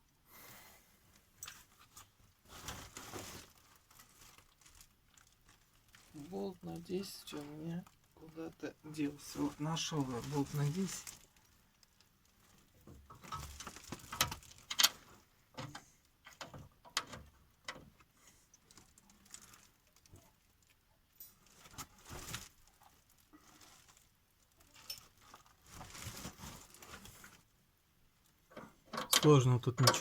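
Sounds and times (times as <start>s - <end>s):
small metallic clicks and taps: 28.5s - 30.0s.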